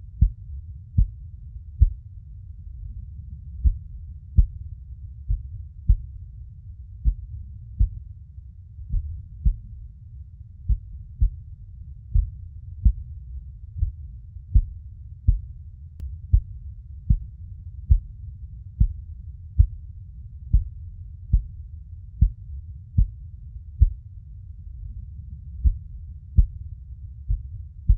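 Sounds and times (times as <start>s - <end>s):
steady low rumble: 0.0s - 27.9s
heartbeat thumps: 0.1s - 1.2s, 1.8s - 2.0s, 3.6s - 6.3s, 7.0s - 8.1s, 8.8s - 9.8s, 10.6s - 11.5s, 12.1s - 15.6s, 16.3s - 18.2s, 18.8s - 19.8s, 20.5s - 21.6s, 22.2s - 23.2s, 23.8s - 24.0s, 25.5s - 27.9s.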